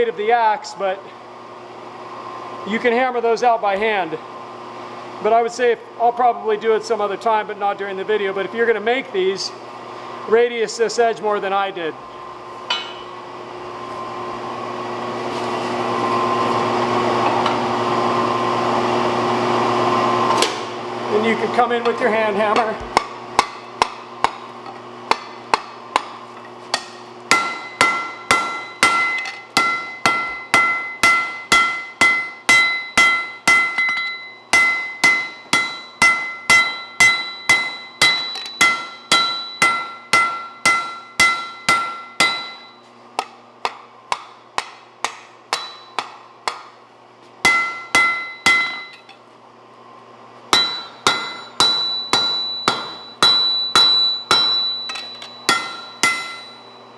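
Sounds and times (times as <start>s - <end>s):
hammer ringing on anvil: 12.7s - 13.1s, 25.1s - 46.7s, 47.4s - 49.2s, 50.5s - 56.9s.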